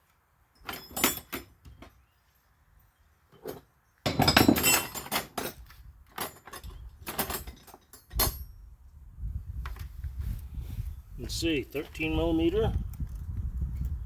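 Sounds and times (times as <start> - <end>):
metal wrenches clinking: 0.6 - 1.9, 3.3 - 8.5.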